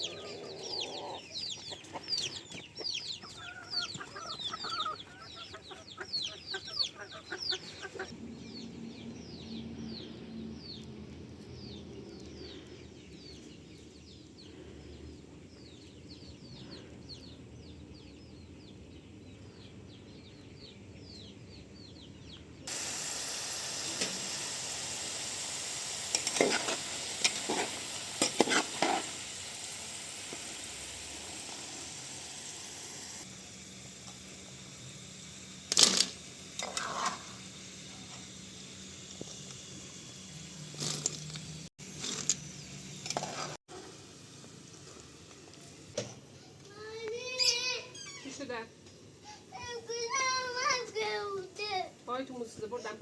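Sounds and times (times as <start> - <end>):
chicks peeping: 0.0 - 10.9
food sizzling in a hot pan: 22.7 - 46.0.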